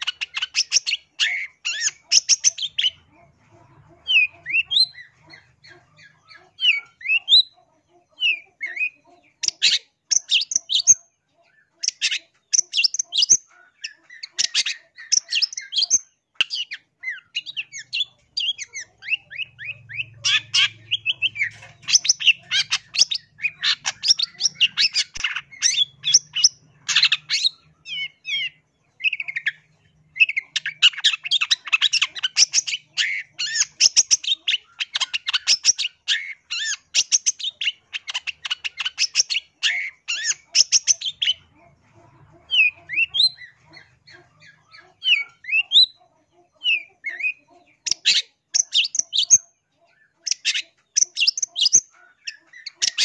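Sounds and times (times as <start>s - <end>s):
bird harsh rapid chattering: 0.0s - 3.2s, 11.8s - 41.6s, 50.2s - 53.0s.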